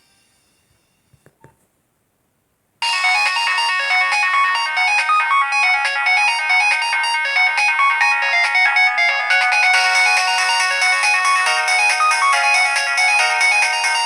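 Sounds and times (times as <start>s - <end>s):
electronic ringtone melody: 2.8s - 14.0s.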